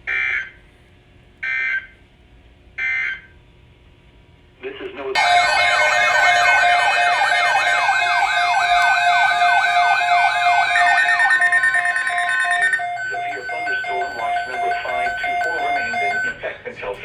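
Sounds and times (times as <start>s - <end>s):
siren-like sweeping tone: 5.2s - 16.4s
steady alert tone: 5.2s - 16.4s.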